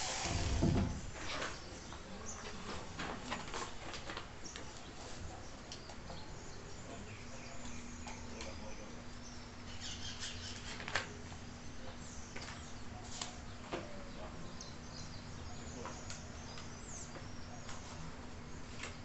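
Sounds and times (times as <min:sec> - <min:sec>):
steady low hum: 0:04.4 - 0:19.0.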